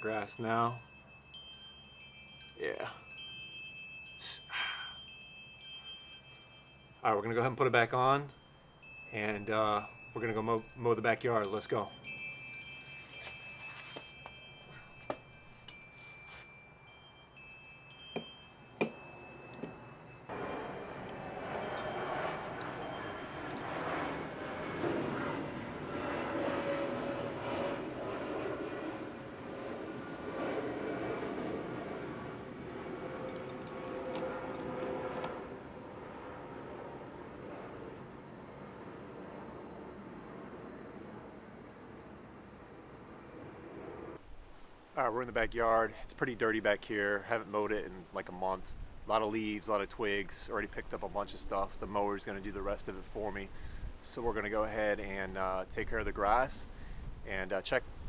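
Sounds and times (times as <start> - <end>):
chimes ringing: 0.0 - 23.5
lawn mower whirring: 18.8 - 36.2.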